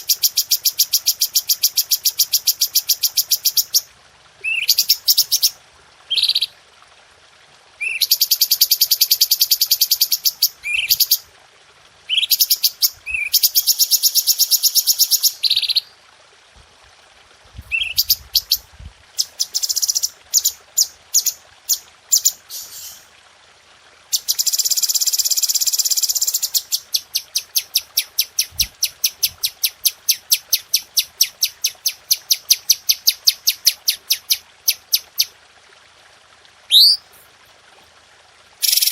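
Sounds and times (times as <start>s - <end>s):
bird trilling song: 17.7s - 18.6s, 36.7s - 37.0s.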